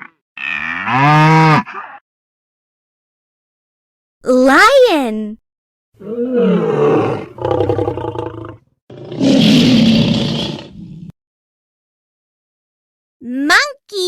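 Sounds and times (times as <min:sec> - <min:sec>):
lion roaring: 0:06.0 - 0:11.1.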